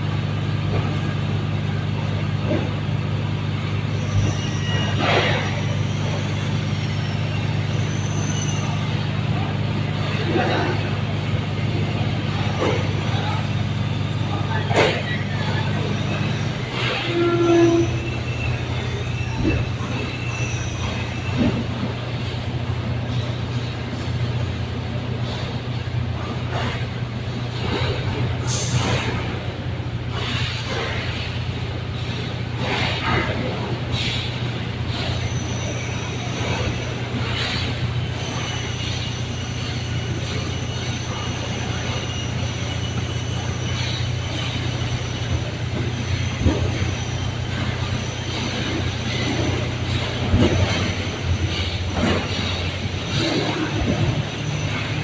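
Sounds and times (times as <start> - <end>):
engine hum: 0.0 - 55.0
machinery squeal: 0.8 - 55.0.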